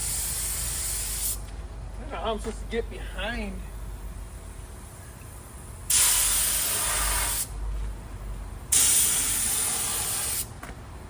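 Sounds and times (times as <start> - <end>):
paint spray gun hissing: 0.0 - 1.4, 5.9 - 7.5, 8.7 - 10.5.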